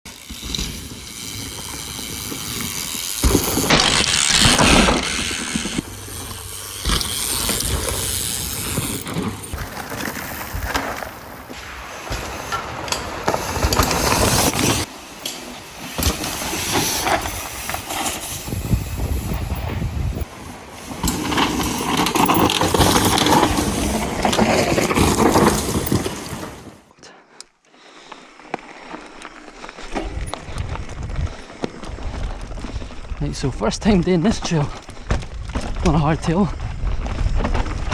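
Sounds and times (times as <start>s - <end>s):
bike tyres on dirt trail: 0.1s - 37.9s
wind on microphone: 18.2s - 20.3s, 30.0s - 33.0s.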